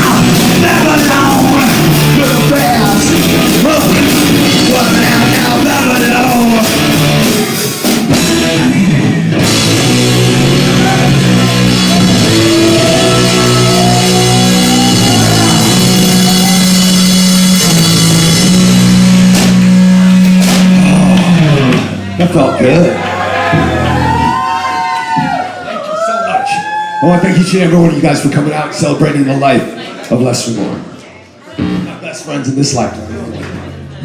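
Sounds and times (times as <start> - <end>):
person singing: 0.0 - 7.8, 10.3 - 17.0
live rock band playing: 0.0 - 25.4.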